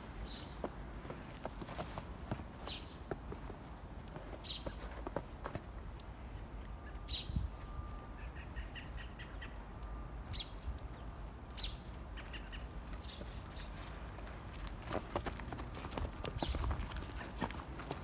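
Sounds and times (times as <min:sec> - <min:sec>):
footsteps crunching in snow: 0:00.0 - 0:05.7, 0:13.8 - 0:18.0
small birds chirping: 0:00.2 - 0:03.5, 0:04.1 - 0:05.0, 0:10.3 - 0:18.0.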